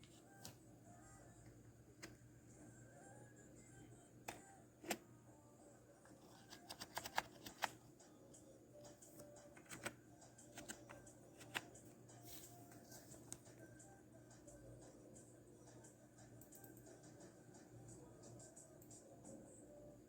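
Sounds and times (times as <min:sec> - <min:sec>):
low steady hum: 0:00.0 - 0:20.0
faint clicks and taps: 0:08.8 - 0:11.9.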